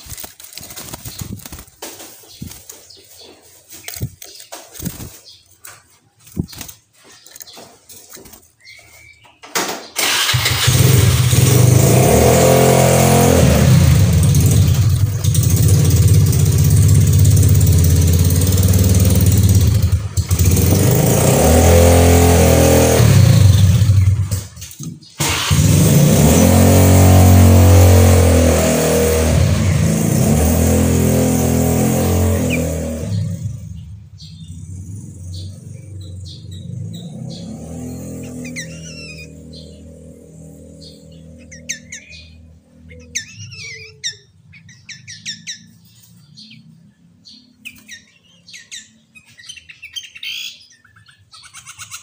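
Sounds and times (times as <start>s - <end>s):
vehicle engine revving: 10.0s - 24.6s, 25.2s - 43.8s.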